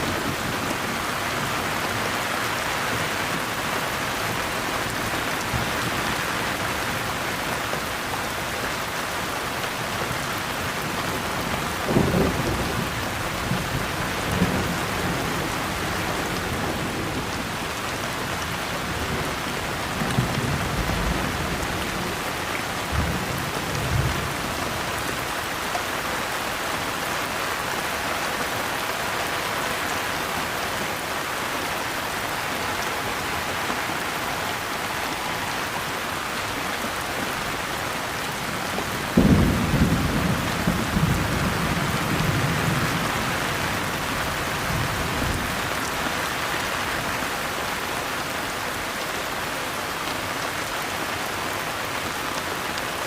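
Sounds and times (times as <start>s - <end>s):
steady rain: 0.0s - 53.0s
distant thunder rumbling: 38.7s - 43.2s.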